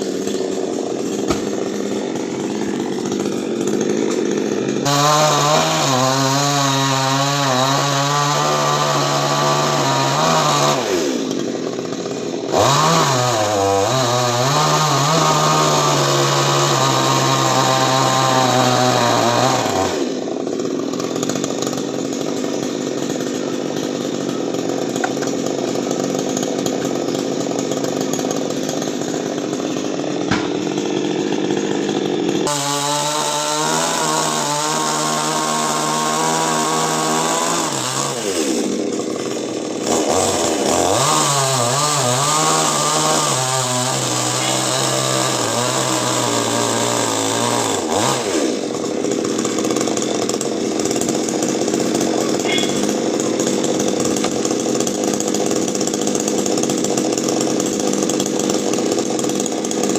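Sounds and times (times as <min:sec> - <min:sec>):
chainsaw cutting wood: 0:00.0 - 0:59.9.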